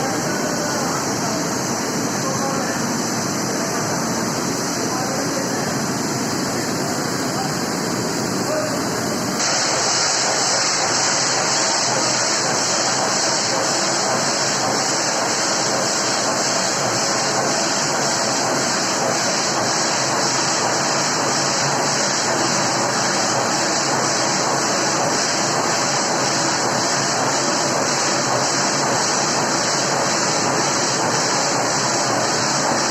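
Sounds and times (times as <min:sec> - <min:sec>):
steam hissing: 0:00.0 - 0:32.9.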